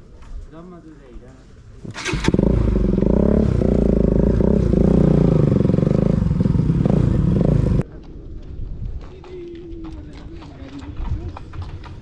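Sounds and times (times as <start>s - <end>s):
loud motorcycle engine: 2.0s - 7.8s.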